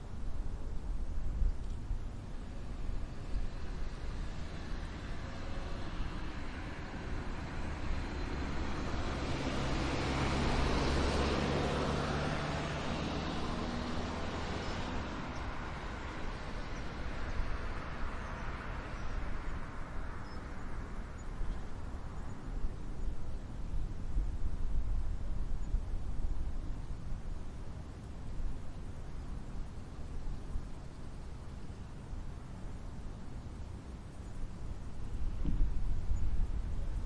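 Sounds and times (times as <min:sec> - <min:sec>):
vehicle passing by: 0:02.3 - 0:24.4.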